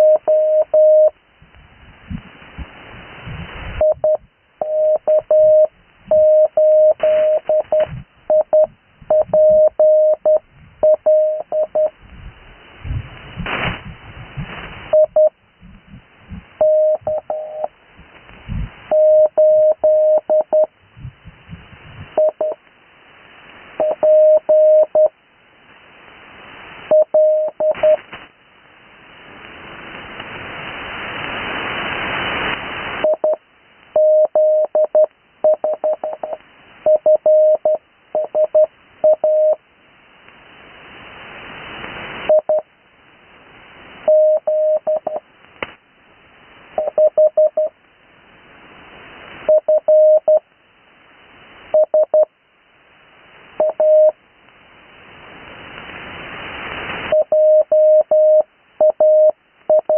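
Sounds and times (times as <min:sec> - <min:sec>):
morse code tone: 0:00.0 - 0:01.2, 0:03.8 - 0:12.0, 0:14.9 - 0:15.3, 0:16.6 - 0:17.7, 0:18.9 - 0:20.7, 0:22.2 - 0:22.6, 0:23.8 - 0:25.1, 0:26.9 - 0:28.0, 0:33.0 - 0:33.4, 0:34.0 - 0:39.6, 0:44.1 - 0:45.2, 0:46.8 - 0:47.7, 0:49.5 - 0:50.4, 0:53.6 - 0:54.1, 0:57.1 - 0:59.9
receiver hiss: 0:00.0 - 0:59.9.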